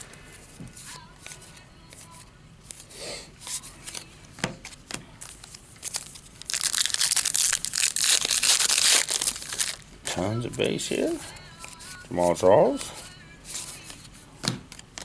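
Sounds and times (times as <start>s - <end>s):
cards clicking and rustling: 3.8s - 9.9s
wrapper crackling as torn open: 5.2s - 9.8s.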